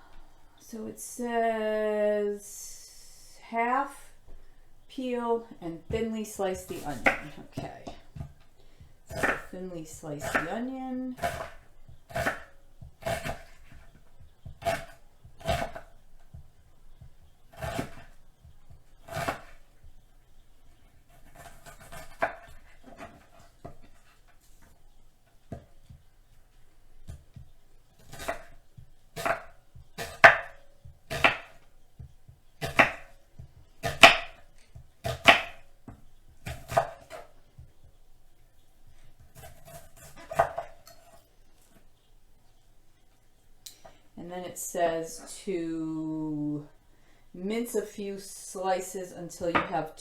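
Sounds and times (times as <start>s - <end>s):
knife scraping: 21.1s - 24.8s, 39.2s - 41.8s.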